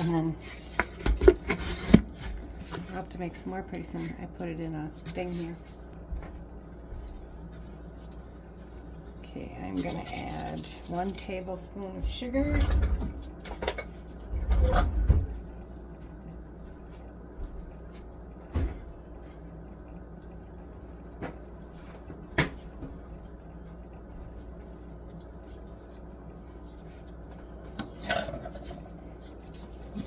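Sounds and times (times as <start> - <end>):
low steady hum: 0.0 - 30.0
kitchen knocks and clatter: 12.0 - 15.4.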